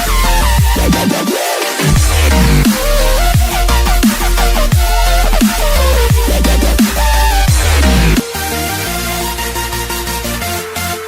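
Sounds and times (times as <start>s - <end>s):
electronic music with heavy bass: 0.0s - 11.0s.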